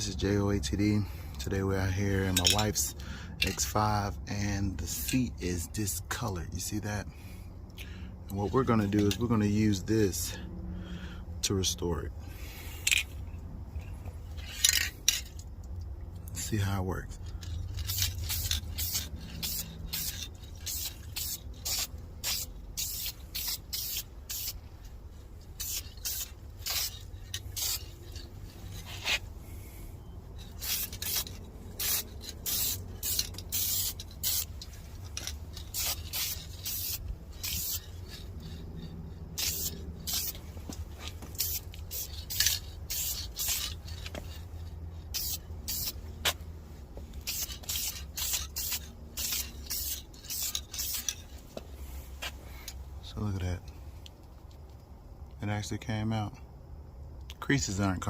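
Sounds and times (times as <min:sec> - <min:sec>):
aerosol spray can hissing bursts: 0:17.9 - 0:24.6, 0:25.6 - 0:28.0, 0:30.6 - 0:34.6, 0:35.6 - 0:38.2, 0:39.4 - 0:40.4, 0:41.3 - 0:43.8, 0:45.1 - 0:46.4, 0:47.2 - 0:51.2.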